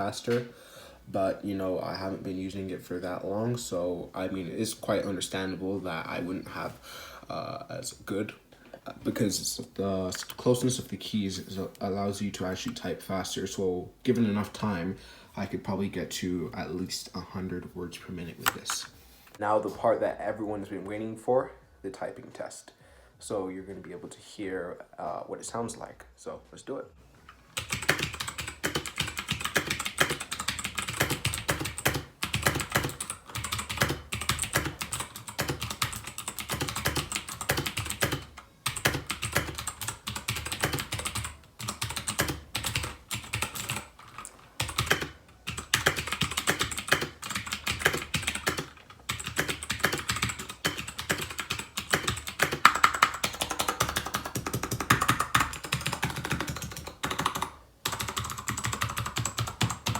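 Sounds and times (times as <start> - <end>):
mechanical keyboard typing: 27.6 - 59.9.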